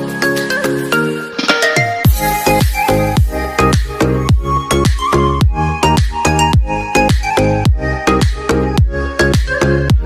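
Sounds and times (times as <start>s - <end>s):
sustained synth chords: 2.1s - 4.6s
deep kick drum beat: 2.1s - 9.0s.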